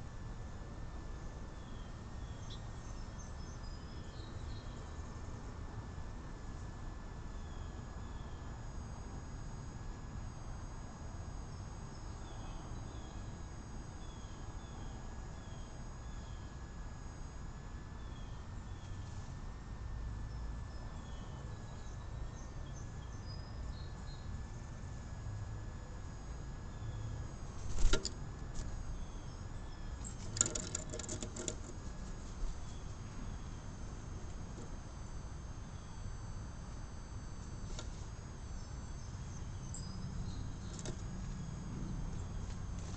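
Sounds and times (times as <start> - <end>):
small bird chirping: 1.5 - 5.1, 28.6 - 42.9
bird pecking metal feeder: 30.0 - 31.9.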